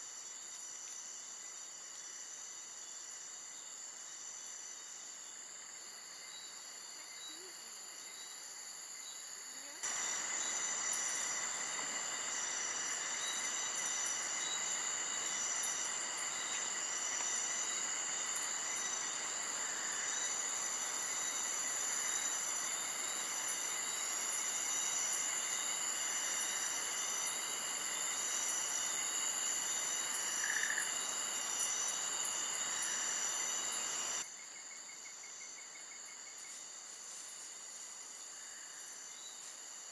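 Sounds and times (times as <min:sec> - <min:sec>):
crickets and insects trilling: 0:00.0 - 0:39.9
steady rushing hiss: 0:09.8 - 0:34.3.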